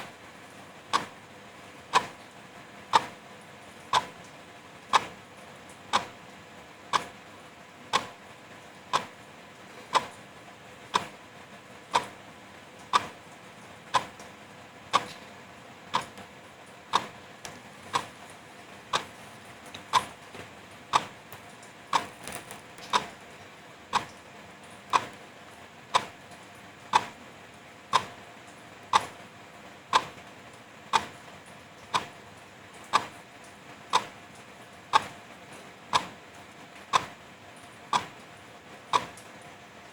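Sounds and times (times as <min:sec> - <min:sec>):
wall clock ticking: 0:00.9 - 0:01.2, 0:01.9 - 0:02.2, 0:02.9 - 0:03.2, 0:03.9 - 0:04.2, 0:04.9 - 0:05.2, 0:05.9 - 0:06.2, 0:06.9 - 0:07.1, 0:07.9 - 0:08.2, 0:08.9 - 0:09.2, 0:09.9 - 0:10.2, 0:10.9 - 0:11.2, 0:11.9 - 0:12.2, 0:12.9 - 0:13.2, 0:13.9 - 0:14.3, 0:14.9 - 0:15.2, 0:15.9 - 0:16.3, 0:16.9 - 0:20.2, 0:20.9 - 0:23.2, 0:23.9 - 0:24.2, 0:24.9 - 0:25.3, 0:25.9 - 0:26.2, 0:26.9 - 0:27.2, 0:27.9 - 0:28.2, 0:28.9 - 0:29.2, 0:29.9 - 0:30.2, 0:30.9 - 0:31.2, 0:31.9 - 0:32.2, 0:32.9 - 0:33.2, 0:33.9 - 0:34.2, 0:34.9 - 0:35.2, 0:35.9 - 0:36.3, 0:36.9 - 0:37.2, 0:37.9 - 0:38.2, 0:38.9 - 0:39.2.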